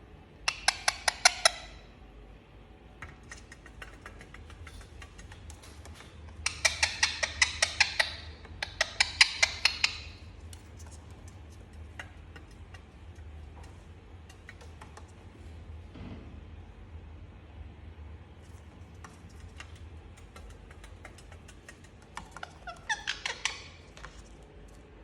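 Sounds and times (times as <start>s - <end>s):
parrot clicking: 0.4s - 1.8s, 3.0s - 15.2s, 18.9s - 24.8s.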